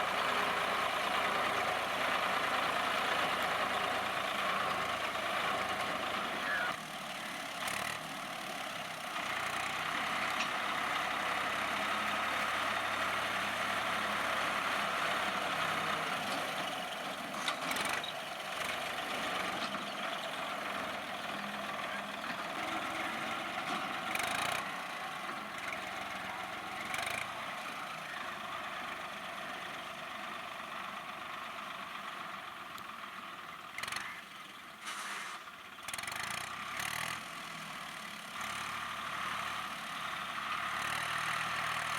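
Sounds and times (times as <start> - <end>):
tractor diesel engine running: 0.0 - 41.9.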